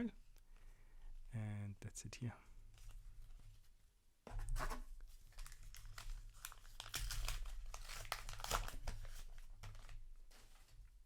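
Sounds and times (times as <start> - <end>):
wrapper crinkling and tearing: 5.3 - 10.0.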